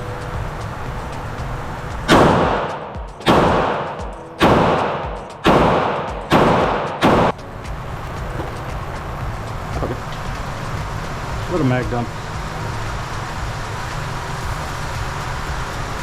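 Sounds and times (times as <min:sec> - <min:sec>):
pistol shots echoing: 0:02.1 - 0:07.4.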